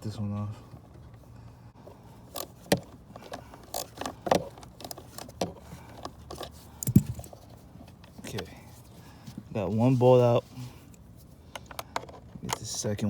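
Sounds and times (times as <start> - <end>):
socket wrench clicking and scraping: 2.3 - 7.4, 11.5 - 12.8.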